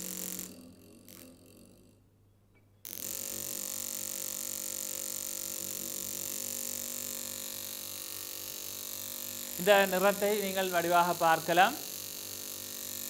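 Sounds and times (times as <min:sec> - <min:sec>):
induction coil interrupter buzzing: 0:00.0 - 0:02.0, 0:02.9 - 0:13.0
spark discharge: 0:06.0 - 0:13.0.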